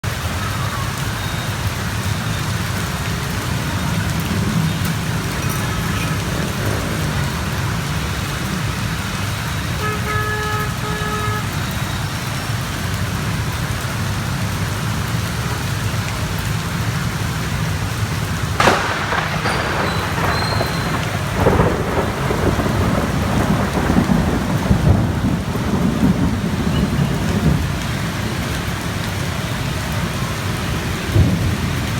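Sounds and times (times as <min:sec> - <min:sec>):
heavy rain pouring on street: 0:00.0 - 0:31.9
thunder crack and rumbles: 0:02.6 - 0:09.8, 0:16.6 - 0:31.9
car horn: 0:09.5 - 0:12.0.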